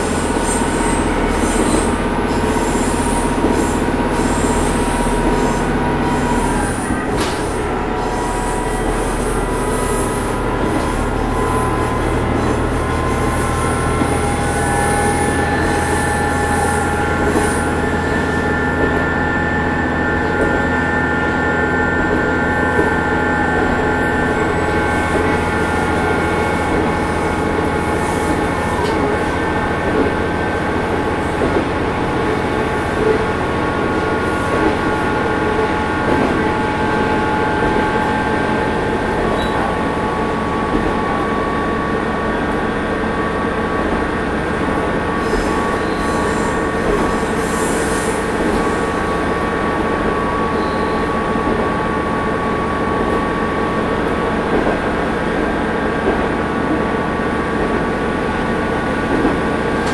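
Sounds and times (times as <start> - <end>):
diesel engine drone: 0.0 - 46.2
wheels rumbling on rail: 0.0 - 59.9
high-pitched wheel squeal: 0.3 - 31.7, 32.3 - 42.0.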